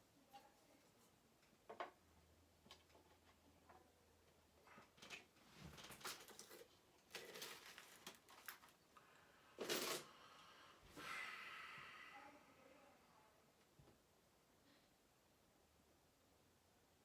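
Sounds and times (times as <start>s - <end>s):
pieces clicking and rustling: 5.0s - 8.8s.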